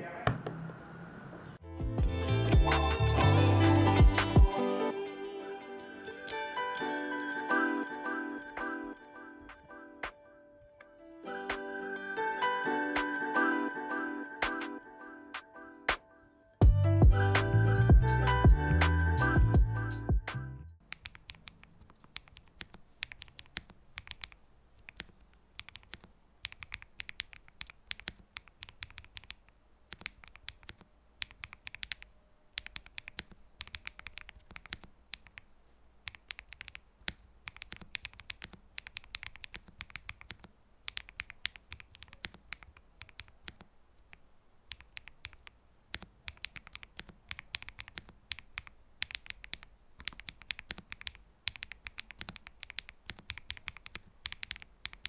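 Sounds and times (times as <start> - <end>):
mechanical keyboard typing: 20.8 - 55.0.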